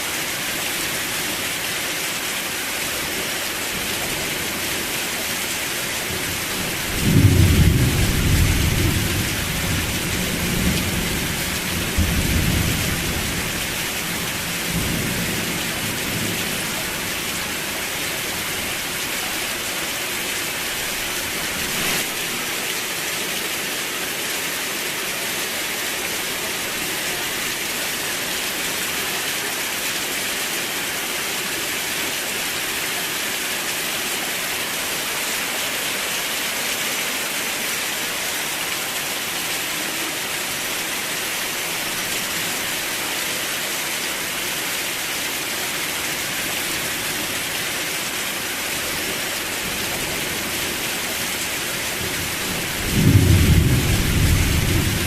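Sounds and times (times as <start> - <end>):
steady rain hissing: 0.0 - 55.0
thunder rumbling: 52.7 - 55.0.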